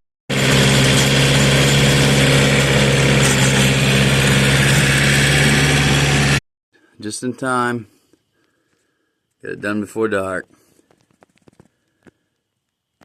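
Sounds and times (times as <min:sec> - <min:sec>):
tiller engine humming: 0:00.3 - 0:06.4.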